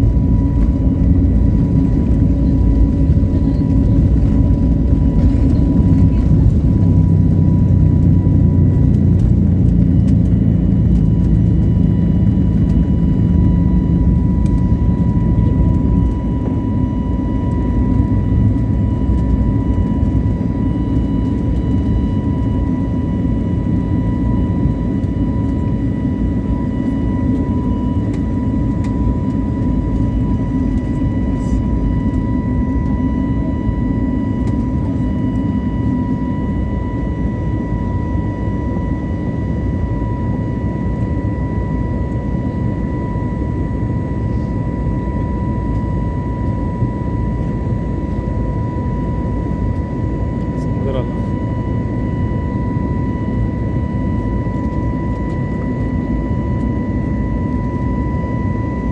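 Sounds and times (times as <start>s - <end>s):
jet engines rumbling: 0.0s - 58.9s.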